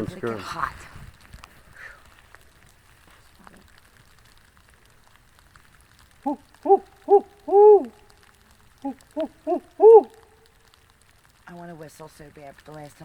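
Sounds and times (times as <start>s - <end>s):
owl hooting: 6.3s - 8.0s, 8.8s - 10.4s.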